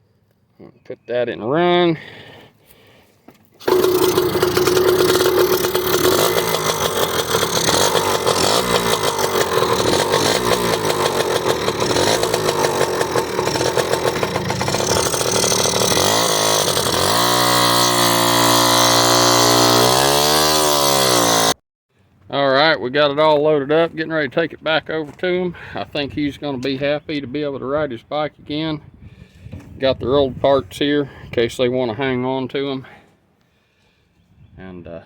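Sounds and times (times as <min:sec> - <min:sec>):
dirt bike two-stroke engine running: 0:03.6 - 0:21.6.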